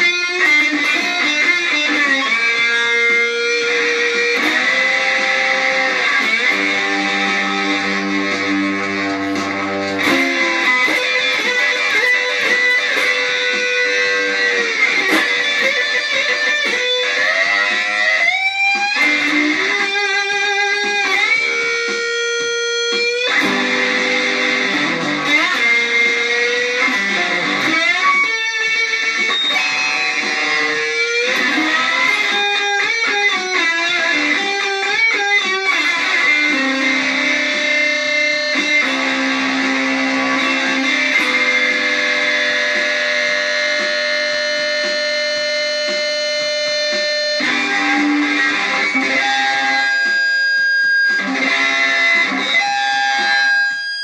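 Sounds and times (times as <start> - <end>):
electric guitar sliding notes: 0.0 - 54.0.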